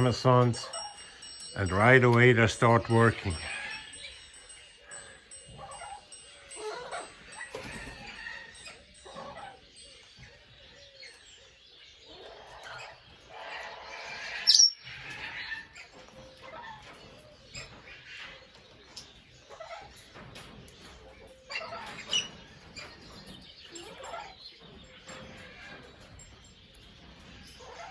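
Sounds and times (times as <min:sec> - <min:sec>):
parrots chattering softly: 0:00.0 - 0:10.0, 0:12.1 - 0:16.9.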